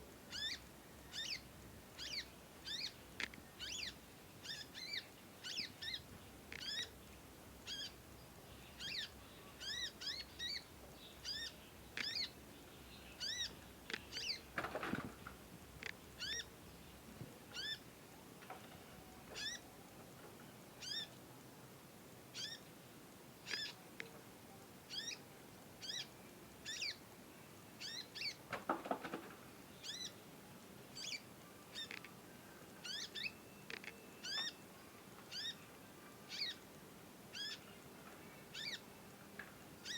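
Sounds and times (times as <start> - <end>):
bird chip calls: 0.3 - 7.0, 7.6 - 8.0, 8.6 - 14.5, 15.8 - 16.5, 17.5 - 17.8, 19.4 - 19.6, 20.8 - 21.1, 22.4 - 22.6, 23.5 - 23.8, 32.8 - 34.6, 35.3 - 35.6, 36.3 - 36.6, 37.3 - 37.7, 38.5 - 38.8.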